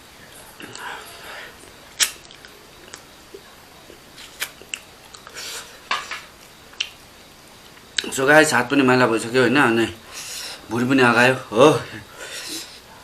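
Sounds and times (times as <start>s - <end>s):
person chewing food: 0.6s - 7.0s
mouth smacks and clicks: 1.6s - 5.4s, 6.4s - 7.0s.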